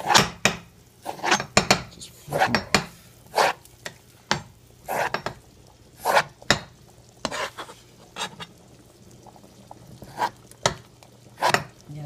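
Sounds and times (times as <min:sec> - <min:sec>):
knife scraping dough off board: 0:01.0 - 0:01.5, 0:03.3 - 0:03.6, 0:04.9 - 0:05.2, 0:06.0 - 0:06.3, 0:07.2 - 0:08.5, 0:11.4 - 0:11.7.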